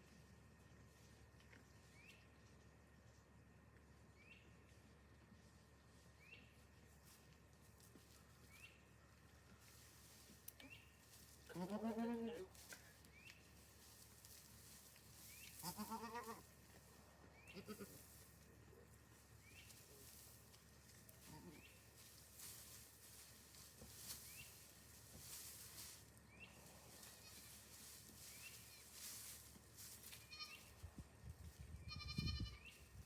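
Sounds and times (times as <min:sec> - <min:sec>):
goat bleating: 0:11.4 - 0:12.6, 0:15.6 - 0:16.5, 0:17.4 - 0:18.0, 0:21.2 - 0:21.8, 0:30.2 - 0:30.7, 0:31.8 - 0:32.8.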